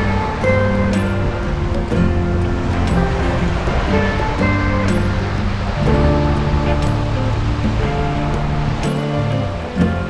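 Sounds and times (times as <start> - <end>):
background music with held notes: 0.0 - 10.0.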